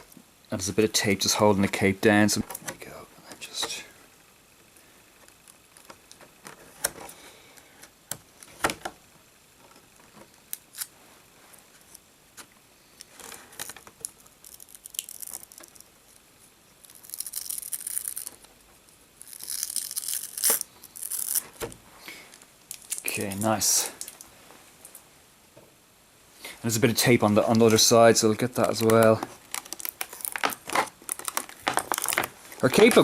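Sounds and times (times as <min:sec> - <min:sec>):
tape crinkling and tearing: 0:10.3 - 0:11.0, 0:13.0 - 0:24.3, 0:27.2 - 0:33.0
plastic packaging clicks and taps: 0:28.6 - 0:33.0.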